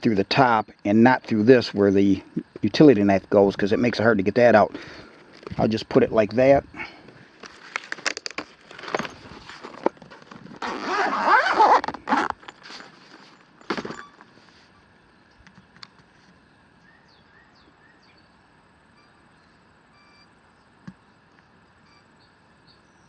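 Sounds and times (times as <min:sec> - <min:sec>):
clicks and knocks of handling: 0:07.1 - 0:10.6.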